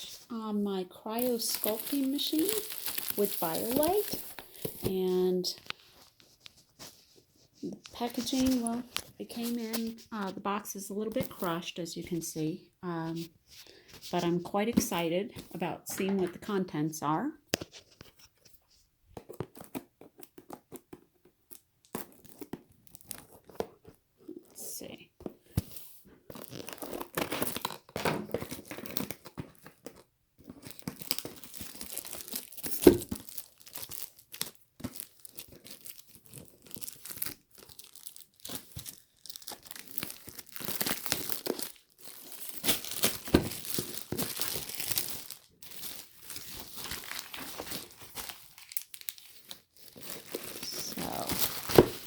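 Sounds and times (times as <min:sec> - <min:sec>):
cardboard and plastic packaging tearing: 0:01.0 - 0:04.9, 0:07.8 - 0:10.1, 0:19.2 - 0:24.0, 0:25.6 - 0:52.0.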